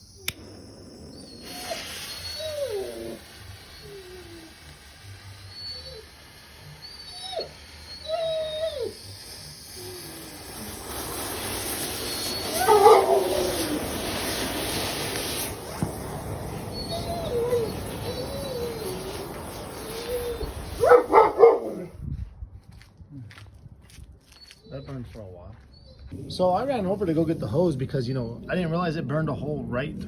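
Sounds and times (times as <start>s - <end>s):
pyrotechnic star hissing: 0.0s - 21.9s, 26.4s - 28.8s
dog whining: 0.9s - 10.8s, 11.7s - 14.2s, 16.5s - 21.9s.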